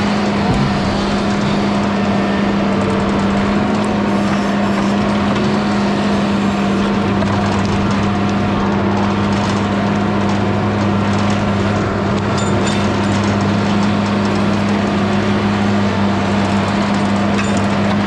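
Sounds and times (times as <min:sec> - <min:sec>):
low hum: 0:00.0 - 0:05.5
small engine running: 0:00.0 - 0:18.0.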